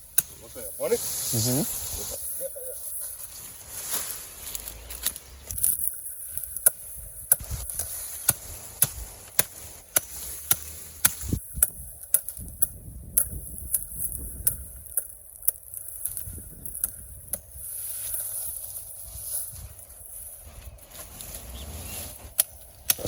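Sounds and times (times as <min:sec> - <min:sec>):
blade chopping grass stalks: 0:03.9 - 0:20.3.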